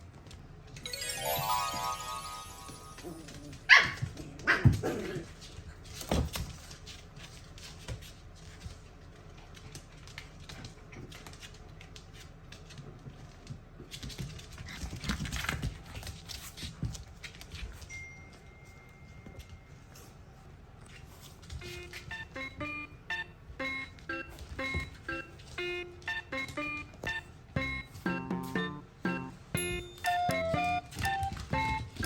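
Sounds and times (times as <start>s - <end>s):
faint clicks and scuffling: 3.3s - 22.6s.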